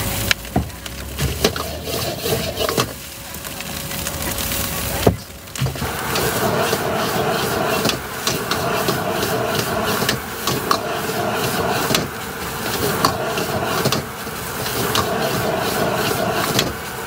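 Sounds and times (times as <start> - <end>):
steady hissing: 0.0 - 17.0.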